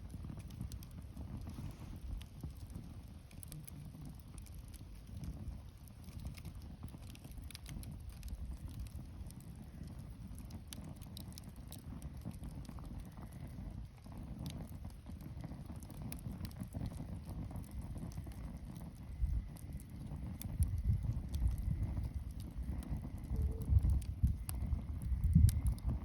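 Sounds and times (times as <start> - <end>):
campfire crackling and popping: 0.0 - 26.0
low rumble: 19.0 - 26.0.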